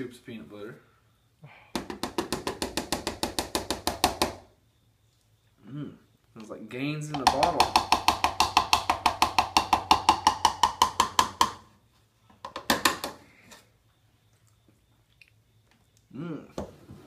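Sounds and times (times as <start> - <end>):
utensil tapping blender jar: 7.1 - 11.5.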